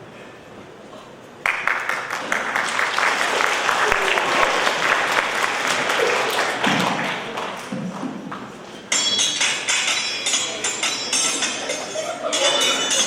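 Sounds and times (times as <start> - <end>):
audience applause: 1.4 - 7.7
high ringing with clinks: 8.9 - 13.0.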